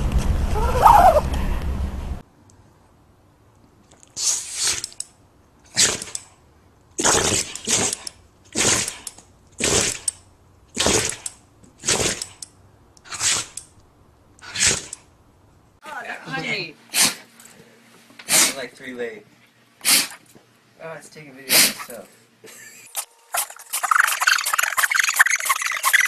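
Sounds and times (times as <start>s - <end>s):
hissy sneezes: 4.2s - 4.9s, 13.1s - 13.6s, 16.9s - 17.3s, 18.2s - 18.6s, 19.8s - 20.2s, 21.5s - 22.0s.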